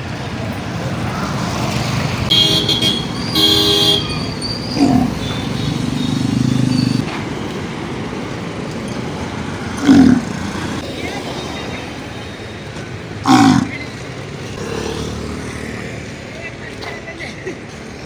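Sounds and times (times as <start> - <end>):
road traffic: 0.0 - 18.0
vehicle horn toots: 2.3 - 7.0.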